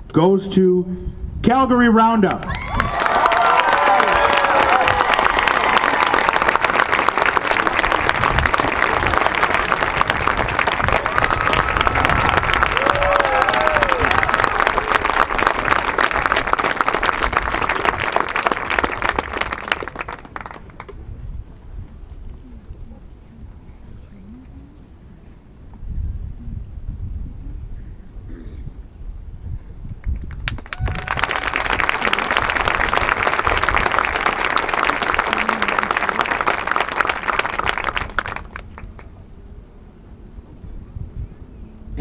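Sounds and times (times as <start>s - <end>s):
crowd applauding: 2.5s - 21.0s, 30.2s - 39.2s.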